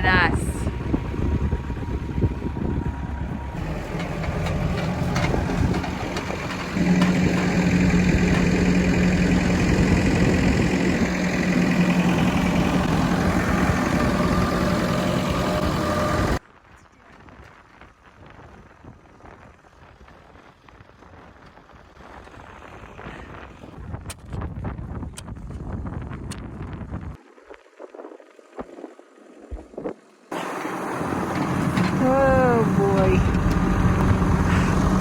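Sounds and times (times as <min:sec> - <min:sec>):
tractor diesel engine running: 0:00.0 - 0:16.4, 0:30.3 - 0:35.0.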